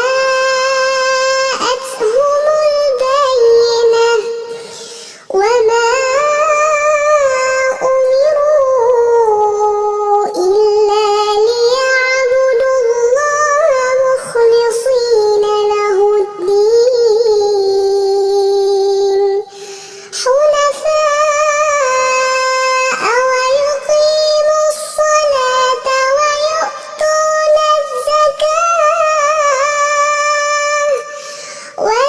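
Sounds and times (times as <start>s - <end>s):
person chanting melodic recitation: 0.0s - 4.5s, 5.3s - 19.6s, 20.2s - 31.2s, 31.8s - 32.0s.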